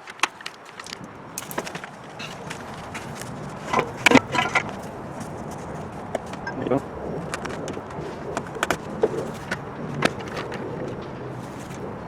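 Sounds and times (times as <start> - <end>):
tools clicking on car parts: 0.0 - 4.9.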